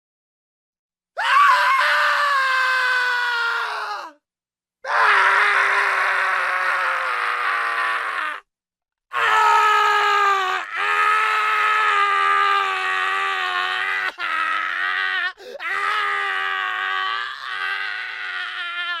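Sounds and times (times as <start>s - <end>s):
man screaming: 9.2s - 19.0s.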